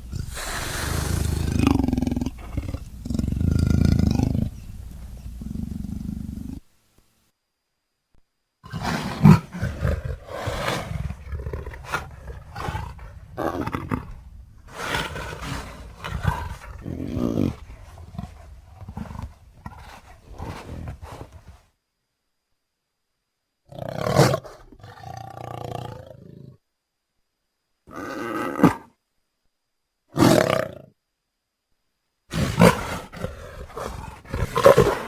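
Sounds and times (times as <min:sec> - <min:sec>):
animal roars and growls: 0:00.0 - 0:06.6, 0:08.6 - 0:21.6, 0:32.3 - 0:35.0.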